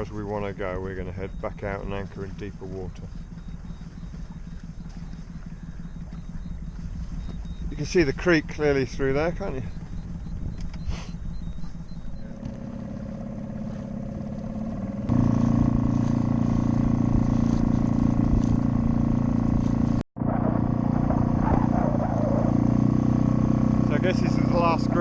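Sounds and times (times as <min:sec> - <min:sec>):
boat engine running: 0:00.0 - 0:25.0.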